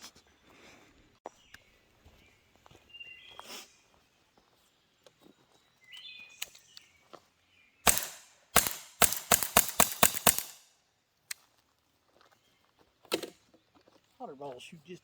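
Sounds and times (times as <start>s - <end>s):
air pistol shots: 7.9s - 10.7s.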